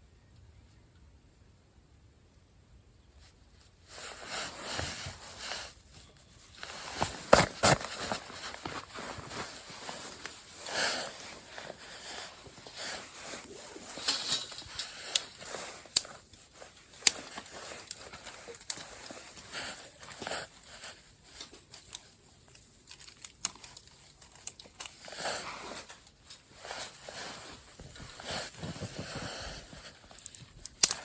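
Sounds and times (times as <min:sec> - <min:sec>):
crinkly material rustling: 0:03.2 - 0:31.0.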